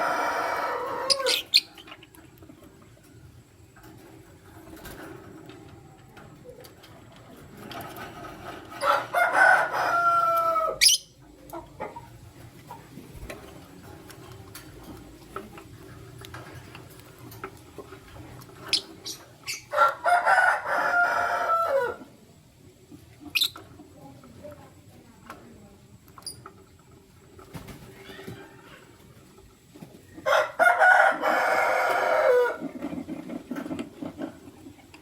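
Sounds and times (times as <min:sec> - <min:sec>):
rooster crowing: 0:00.0 - 0:01.4, 0:08.8 - 0:10.8, 0:19.7 - 0:22.0, 0:30.2 - 0:32.6.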